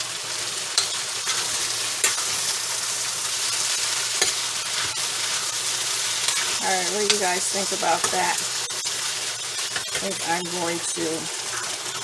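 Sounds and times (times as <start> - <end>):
vegetables sizzling in oil: 0.0 - 12.0
utensil clicking against pan: 0.7 - 1.4.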